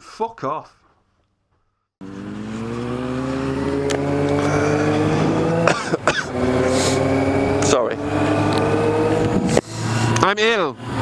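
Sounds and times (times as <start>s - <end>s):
vehicle engine running: 2.0s - 11.0s.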